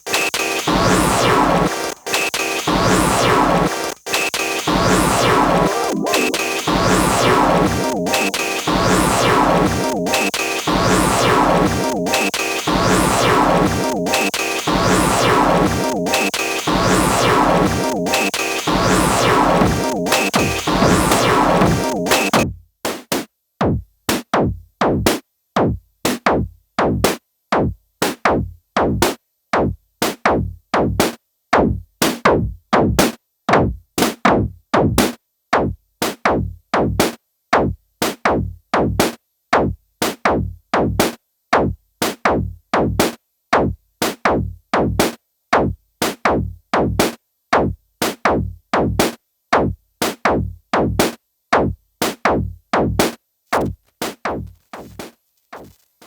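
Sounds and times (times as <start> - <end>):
electronic drum machine beat: 0.0 - 22.5, 23.6 - 33.8, 40.4 - 55.9.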